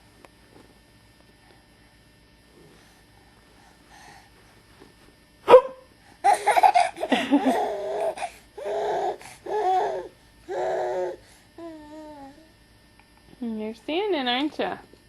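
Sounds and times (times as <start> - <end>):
baby laughing: 6.2 - 10.0
baby cooing: 7.5 - 12.5.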